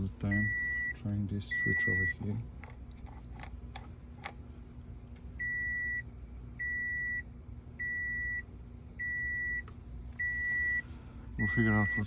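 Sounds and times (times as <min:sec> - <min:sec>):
low steady hum: 0:00.0 - 0:12.0
car door warning beeps: 0:00.3 - 0:02.2, 0:11.4 - 0:12.0.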